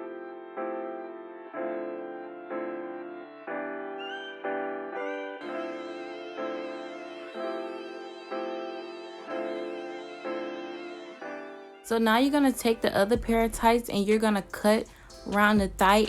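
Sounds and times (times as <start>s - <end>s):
sustained keyboard chords: 0.0s - 16.0s.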